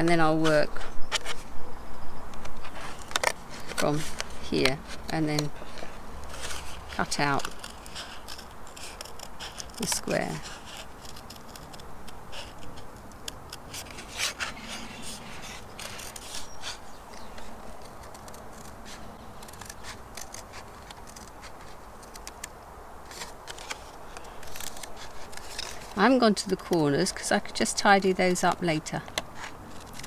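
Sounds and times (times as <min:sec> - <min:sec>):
thin card being cut: 0:02.4 - 0:22.5
scraping strokes: 0:02.6 - 0:22.2.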